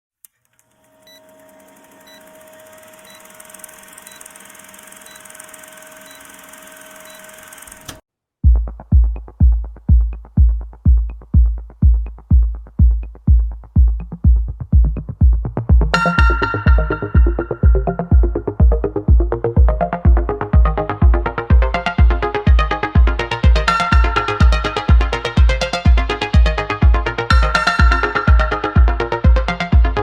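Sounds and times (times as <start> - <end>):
booming kick drum beat: 8.4 - 30.0.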